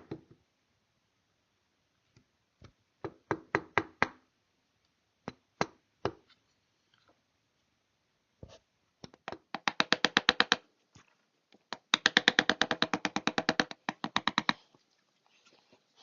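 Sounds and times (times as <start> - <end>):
chisel tapping on wood: 3.0 - 4.2, 9.0 - 10.6, 11.7 - 14.6.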